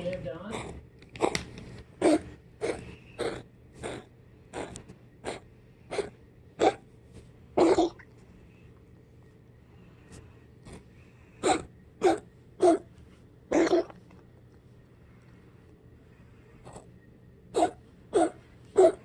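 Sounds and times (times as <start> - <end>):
pet wheezing: 2.0 - 6.8, 11.4 - 12.9.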